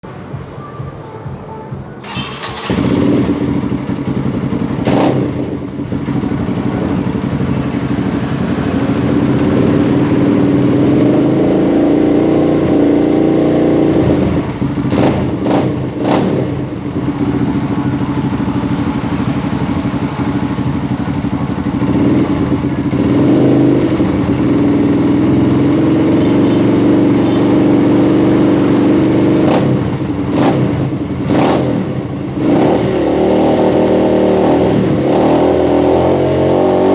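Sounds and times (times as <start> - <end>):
dirt bike engine running: 2.0 - 36.9
sharp engine blips: 13.6 - 31.6.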